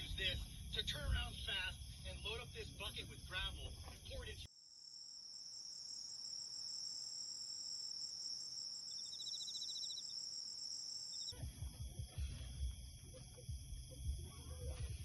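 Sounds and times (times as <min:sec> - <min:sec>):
insects trilling: 0:04.6 - 0:14.4
rapid chirping trill: 0:05.8 - 0:11.4.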